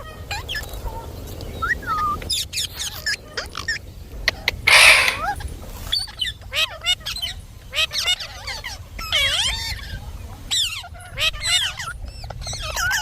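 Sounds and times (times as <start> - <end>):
loud harsh noisy burst: 4.7 - 5.2
parakeet chirps and whistles: 4.7 - 5.2.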